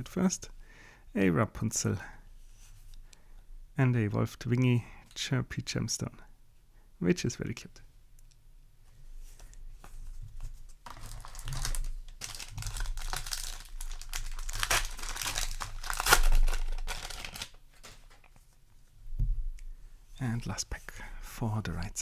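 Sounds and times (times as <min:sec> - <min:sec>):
wrapper tearing and crinkling: 0:10.8 - 0:18.3.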